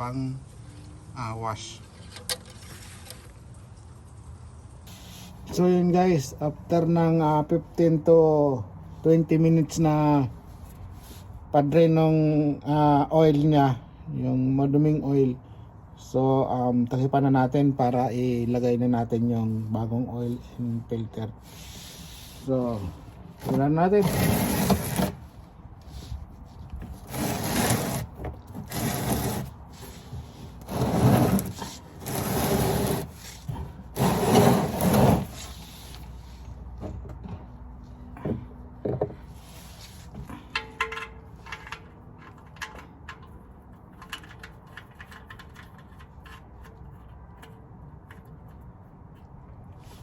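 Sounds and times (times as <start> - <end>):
loud scraping strokes: 21.4 - 25.3, 26.9 - 36.4.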